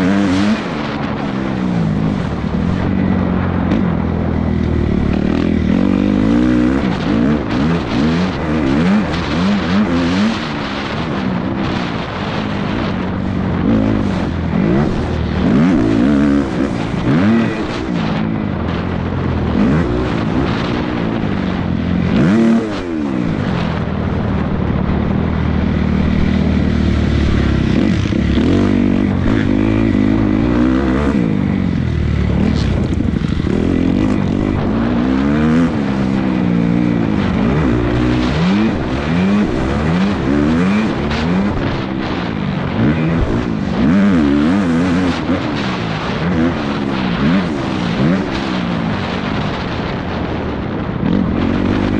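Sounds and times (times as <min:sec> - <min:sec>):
motocross bike engines revving: 0:00.0 - 0:51.9.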